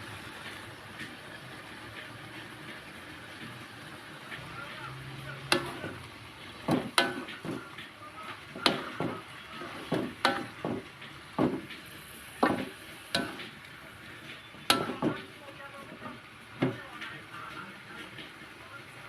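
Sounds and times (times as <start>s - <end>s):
stir-fry sizzling: 0.0s - 19.0s
spatula scraping wok: 5.4s - 16.3s.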